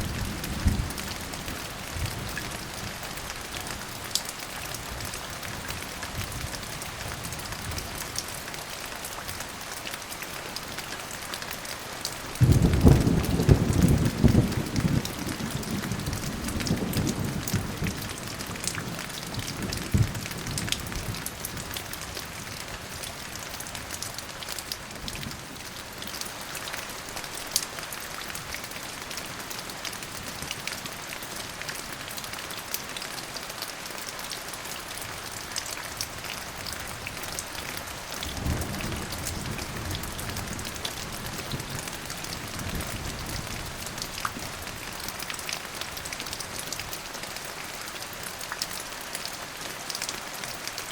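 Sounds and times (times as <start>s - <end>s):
steady rain with dripping: 0.0s - 50.9s
low thunder rumbling: 12.4s - 19.0s, 38.2s - 41.7s.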